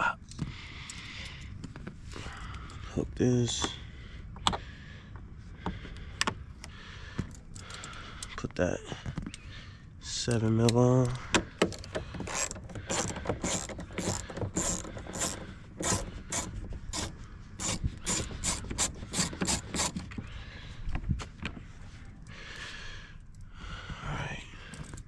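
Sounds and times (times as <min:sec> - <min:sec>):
ratchet wrench clicking: 0:11.6 - 0:20.1.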